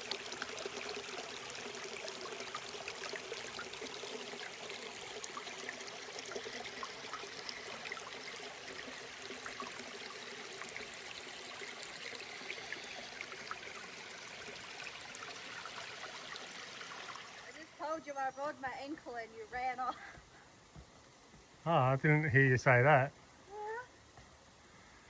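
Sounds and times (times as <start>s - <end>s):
creek water rushing: 0.0s - 17.7s.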